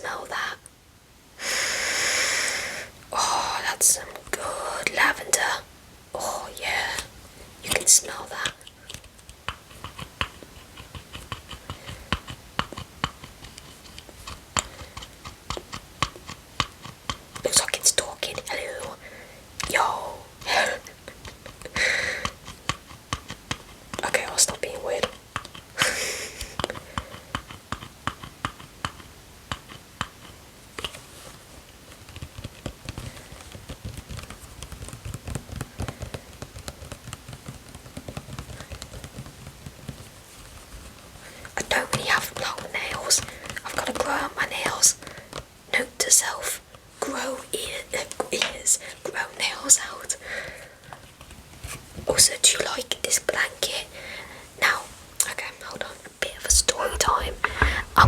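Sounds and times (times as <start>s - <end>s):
fingernails scratching: 8.8s - 17.4s, 56.3s - 58.0s
tapping a plastic bottle: 56.5s - 58.0s.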